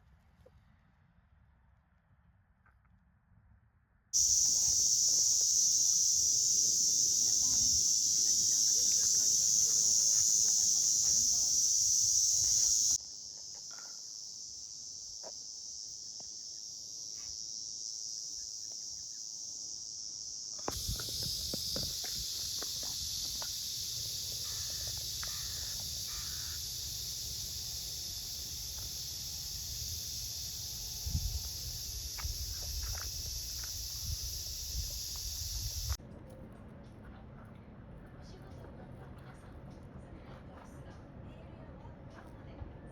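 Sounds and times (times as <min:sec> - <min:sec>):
cicadas buzzing: 0:04.2 - 0:36.0.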